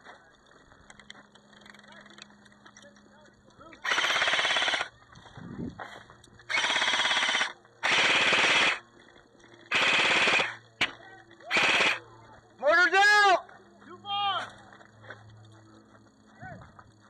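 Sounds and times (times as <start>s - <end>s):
airsoft gun firing bursts: 3.8s - 4.9s, 6.5s - 8.9s, 9.7s - 12.0s.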